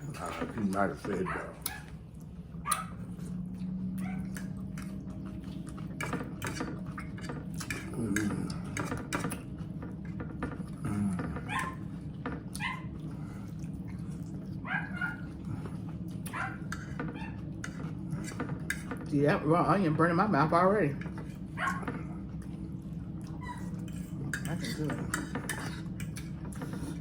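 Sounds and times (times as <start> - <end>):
cutlery clicking against dishes: 6.0 - 9.5, 23.9 - 26.8
dog whimpering: 11.4 - 11.8, 21.6 - 21.9, 23.3 - 23.8.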